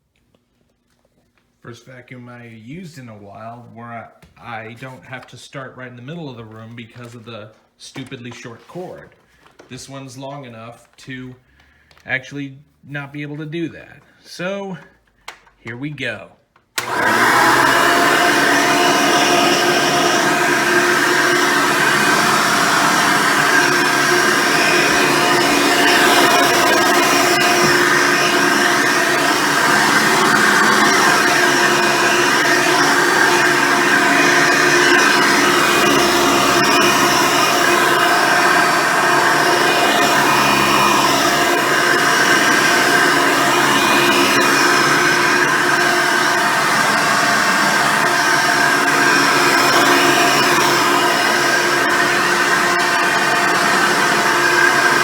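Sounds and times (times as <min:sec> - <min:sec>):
vacuum cleaner running: 0:16.8 - 0:55.0.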